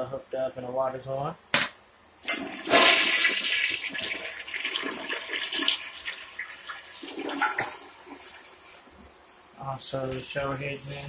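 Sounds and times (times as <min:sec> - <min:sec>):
toilet flushing: 0:02.2 - 0:08.8.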